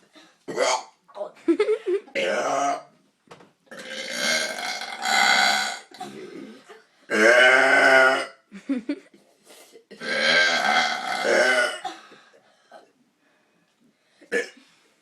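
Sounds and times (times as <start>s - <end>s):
loud burps: 0.5s - 0.9s, 2.1s - 2.9s, 3.7s - 8.5s, 9.9s - 12.0s, 14.3s - 14.6s
small throat sounds: 3.7s - 7.5s.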